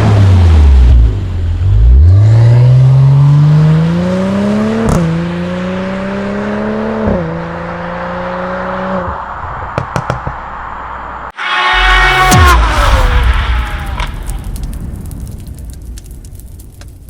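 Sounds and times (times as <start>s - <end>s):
car engine accelerating: 0.0s - 9.4s.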